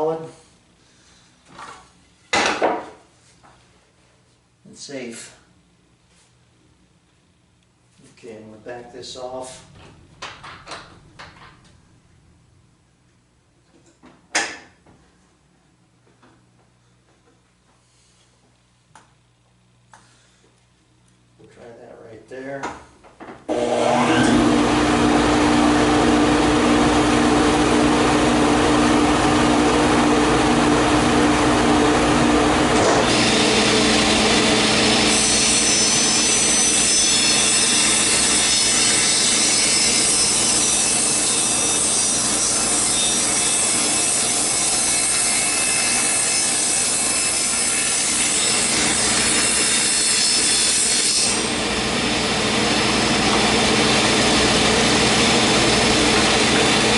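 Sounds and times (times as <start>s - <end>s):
power saw cutting wood: 23.5s - 56.9s.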